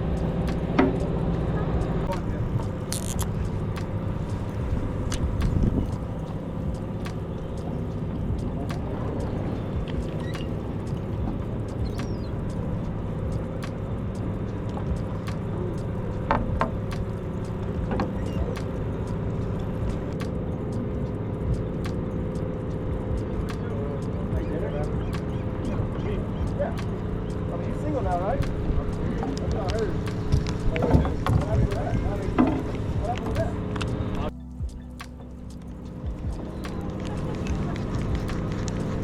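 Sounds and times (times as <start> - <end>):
boat engine droning: 0.0 - 39.0
tackle clicking and knocking: 2.0 - 20.4.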